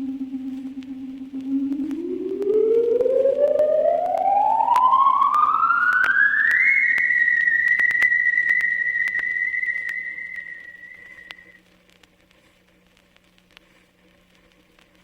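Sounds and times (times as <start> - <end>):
rising electronic sci-fi tone: 0.0 - 11.5.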